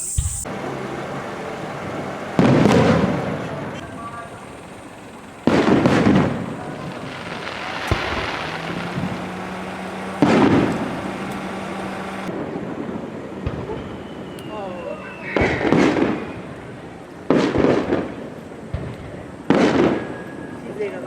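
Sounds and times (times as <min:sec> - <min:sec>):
fireworks booming overhead: 0:00.0 - 0:14.2, 0:15.4 - 0:20.9
short sharp cracks: 0:03.4 - 0:12.3.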